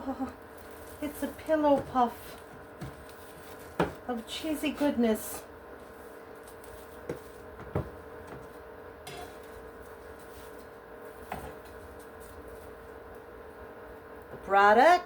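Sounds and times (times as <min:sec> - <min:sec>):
steady background hum: 0:00.0 - 0:15.0
plate and utensils knocking: 0:09.1 - 0:09.4.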